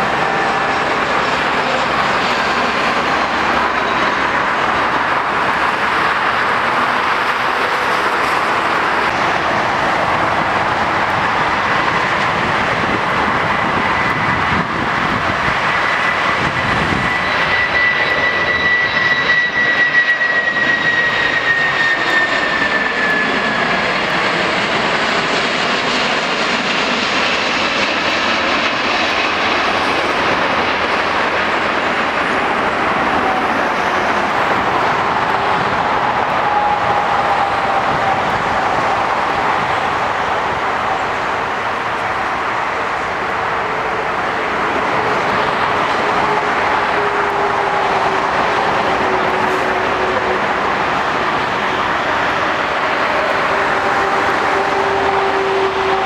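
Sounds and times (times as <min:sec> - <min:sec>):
airliner flying past: 0:00.0 - 0:56.0.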